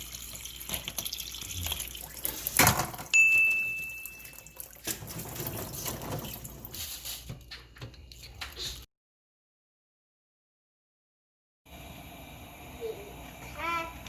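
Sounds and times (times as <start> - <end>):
water running and splashing: 0.0 - 3.1, 3.8 - 7.1.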